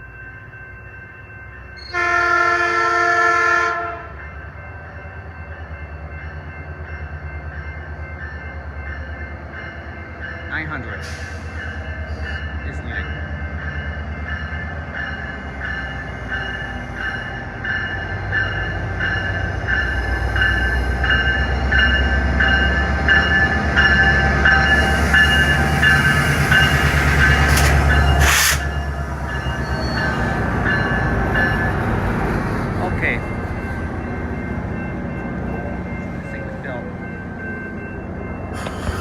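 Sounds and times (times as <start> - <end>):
diesel locomotive engine: 0.0 - 39.0
locomotive bell ringing: 0.0 - 39.0
short hisses: 28.2 - 28.7.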